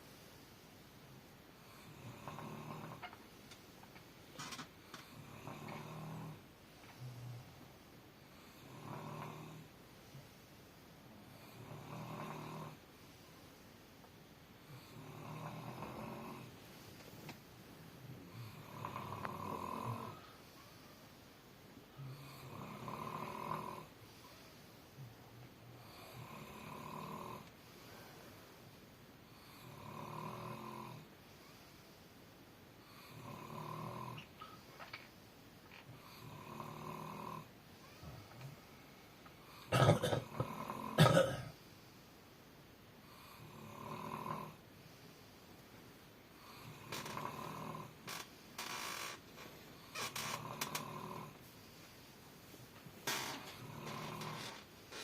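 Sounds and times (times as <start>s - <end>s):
person snoring: 1.6s - 3.1s, 5.0s - 6.4s, 8.4s - 9.7s, 11.4s - 12.8s, 14.7s - 16.5s, 18.3s - 20.3s, 22.0s - 23.9s, 25.8s - 27.5s, 29.4s - 31.1s, 32.9s - 34.4s, 36.0s - 38.0s, 39.4s - 41.5s, 43.1s - 44.6s, 46.4s - 49.2s, 49.8s - 51.4s, 53.0s - 55.0s.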